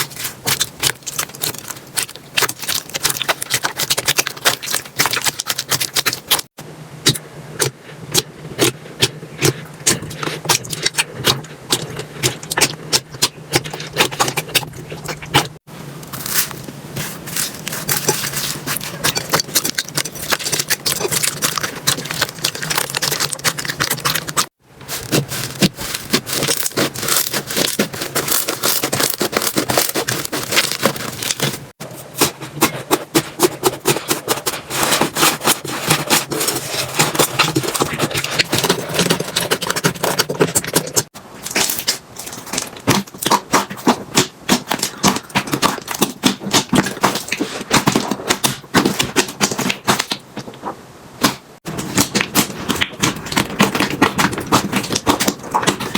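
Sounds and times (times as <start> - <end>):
slime crackling and popping: 0.0 - 7.2, 8.1 - 31.8, 51.8 - 55.9.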